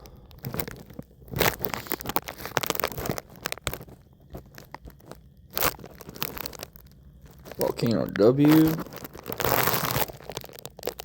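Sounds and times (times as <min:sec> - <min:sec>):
clicks and crackling rustles: 0:00.0 - 0:11.0.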